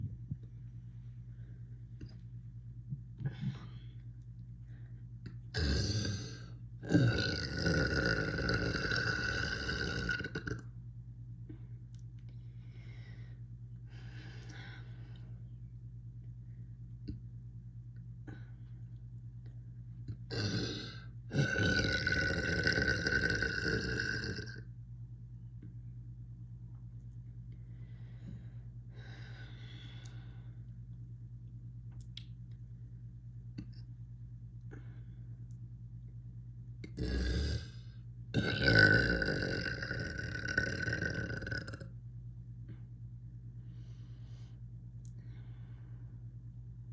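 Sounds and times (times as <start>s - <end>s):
person burping: 5.5s - 10.7s, 20.3s - 24.6s, 36.8s - 37.8s, 38.4s - 41.9s.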